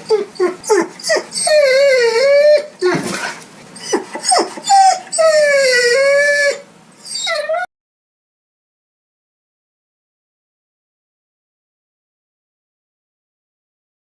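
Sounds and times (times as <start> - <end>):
dog yipping: 0.0 - 3.2, 3.8 - 7.7
dog whining and whimpering: 0.0 - 7.7.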